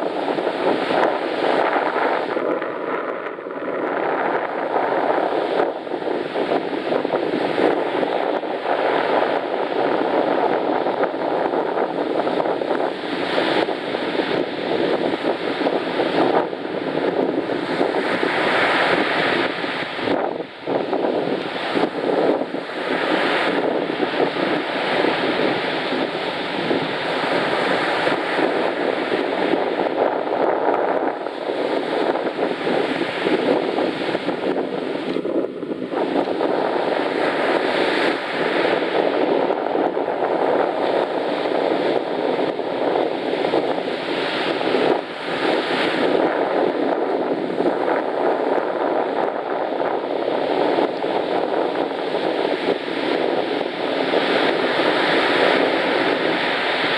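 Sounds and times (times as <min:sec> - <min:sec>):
surf washing on shore: 0:00.0 - 0:56.9
wind buffeting the microphone: 0:00.0 - 0:56.9.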